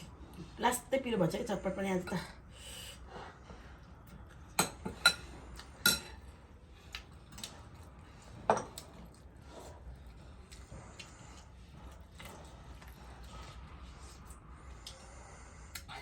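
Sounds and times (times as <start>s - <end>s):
cutlery clinking against a dish: 4.6s - 6.2s.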